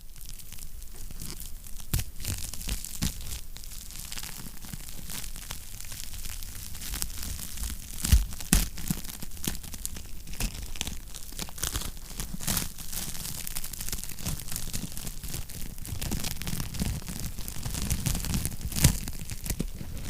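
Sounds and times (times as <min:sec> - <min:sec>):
wood fire crackling and popping: 0:00.1 - 0:20.0.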